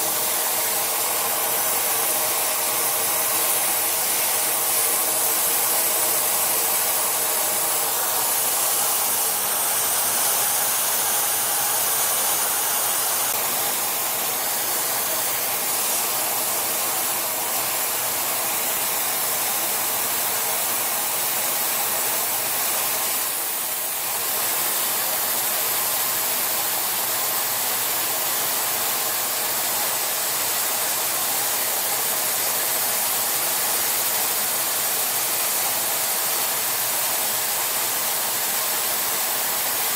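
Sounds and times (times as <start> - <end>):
metal-spray gun hissing: 0.0 - 20.9.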